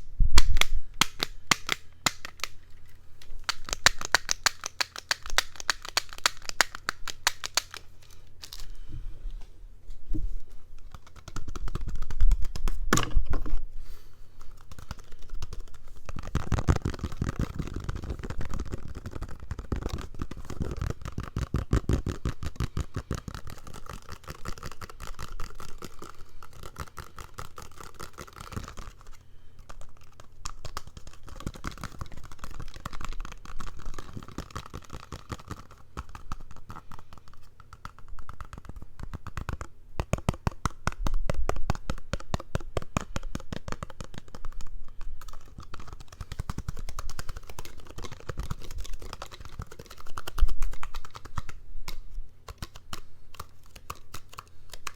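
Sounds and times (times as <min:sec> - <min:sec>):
tapping and scratching close to microphone: 0:09.9 - 0:13.7, 0:14.3 - 0:54.9.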